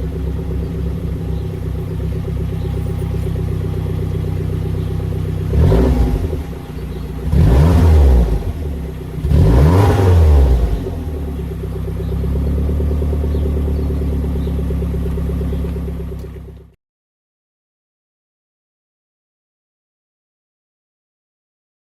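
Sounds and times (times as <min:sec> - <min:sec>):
car engine idling and revving: 0:00.0 - 0:16.8.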